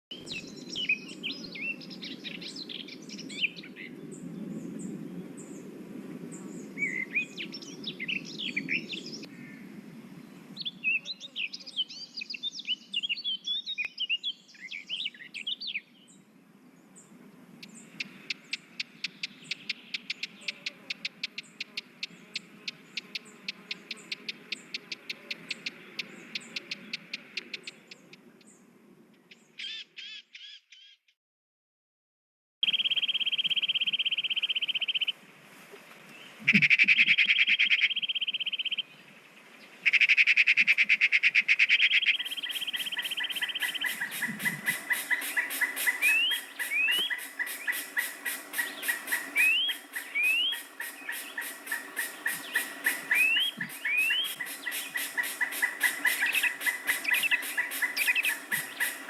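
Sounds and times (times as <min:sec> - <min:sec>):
small birds chirping: 0:00.1 - 0:05.7, 0:06.3 - 0:09.3, 0:17.0 - 0:31.1, 0:41.4 - 0:59.0
repeated short bird notes: 0:36.4 - 0:38.8, 0:39.9 - 0:59.0.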